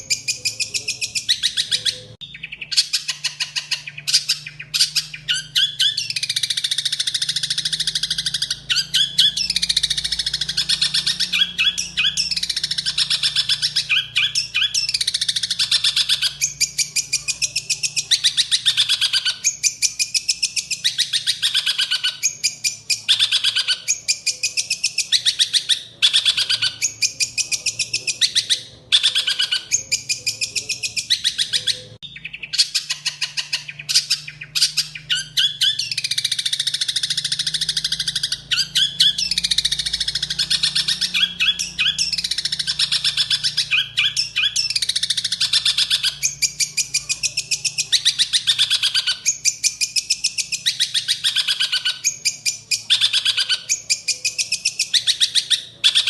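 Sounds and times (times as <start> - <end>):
songbird singing: 0.0 - 56.0.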